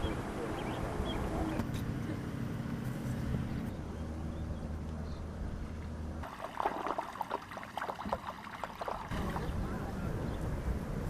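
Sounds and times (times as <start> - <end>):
low motor hum: 0.0 - 11.0
water splashing and knocking: 6.2 - 9.5.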